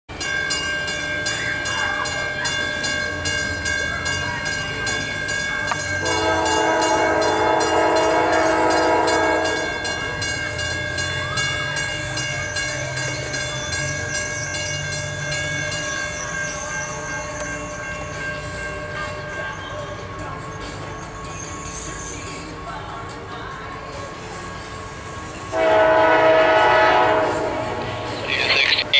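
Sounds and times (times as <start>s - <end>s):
steady high ringing tone: 0.1s - 27.3s
diesel locomotive rumble: 0.1s - 28.9s
locomotive horn chord blast: 6.0s - 10.0s, 25.5s - 28.2s.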